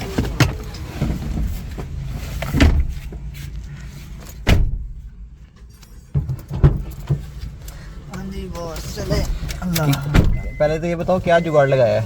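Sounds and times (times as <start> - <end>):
low steady car rumble: 0.0 - 12.0
car doors thudding shut: 2.4 - 3.0, 4.4 - 5.0, 9.2 - 10.8.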